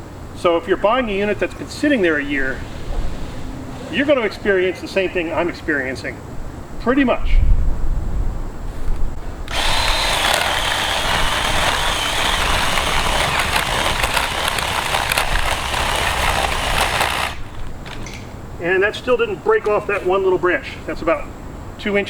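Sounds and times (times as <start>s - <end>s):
electric chainsaw cutting branch: 9.5s - 18.0s.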